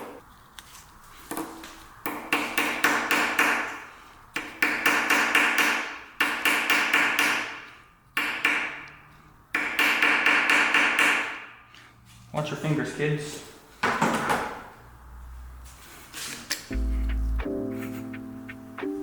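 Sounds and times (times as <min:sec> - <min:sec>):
hammer striking metal: 0:04.4 - 0:08.9, 0:09.5 - 0:11.6.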